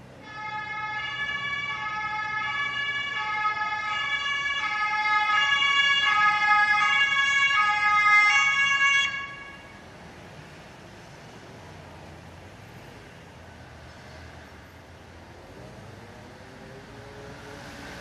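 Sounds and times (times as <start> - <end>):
ambulance two-tone siren: 0.2 - 9.8.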